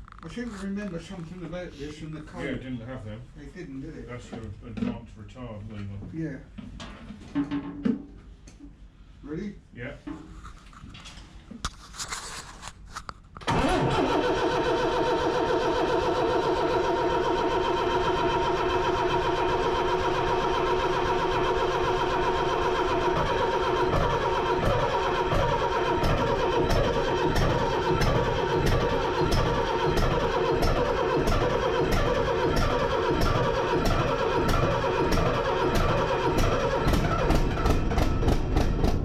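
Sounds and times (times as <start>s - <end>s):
diesel engine running: 13.4s - 39.0s.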